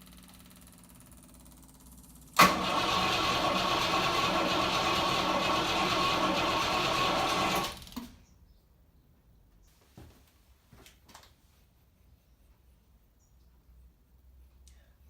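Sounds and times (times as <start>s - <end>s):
starter motor cranking engine: 2.3s - 8.2s.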